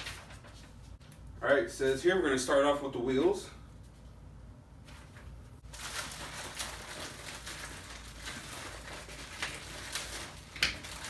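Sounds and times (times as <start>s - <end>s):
packaging rustling: 5.6s - 11.0s.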